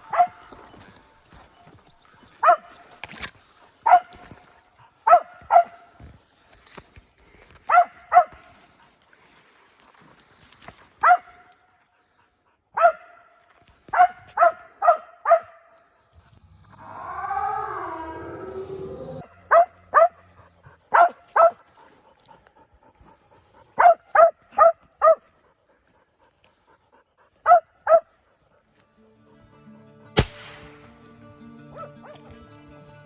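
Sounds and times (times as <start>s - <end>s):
dog barking: 0.0s - 0.5s, 2.4s - 2.8s, 3.8s - 4.4s, 5.0s - 5.9s, 7.7s - 8.4s, 11.0s - 11.5s, 12.7s - 15.8s, 19.2s - 21.6s, 23.7s - 25.3s, 27.4s - 28.2s, 31.7s - 32.4s.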